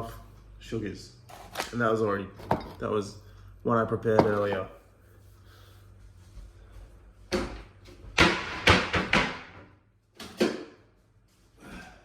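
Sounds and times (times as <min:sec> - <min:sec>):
kitchen things knocking and clunking: 0:02.4 - 0:02.9, 0:04.0 - 0:04.7, 0:07.3 - 0:10.8.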